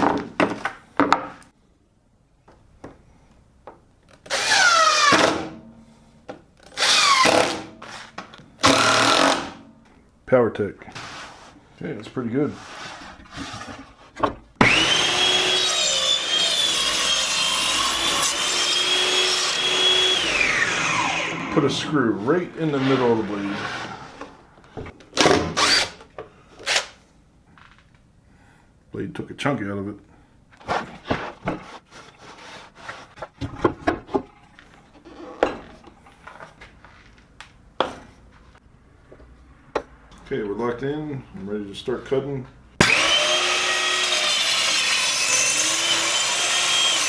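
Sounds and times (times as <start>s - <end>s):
wood scraping against wood: 10.9s - 14.4s, 19.2s - 24.7s, 30.6s - 33.6s, 42.9s - 47.0s
table saw cutting plywood: 14.6s - 24.3s, 42.8s - 47.0s.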